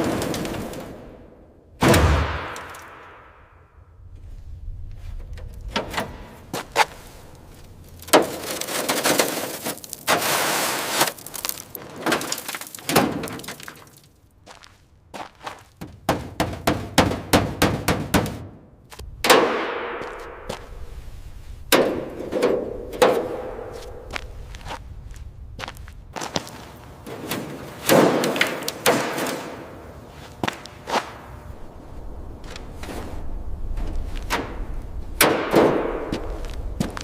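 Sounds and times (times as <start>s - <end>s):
metal clanging and knocking: 15.8s - 18.4s.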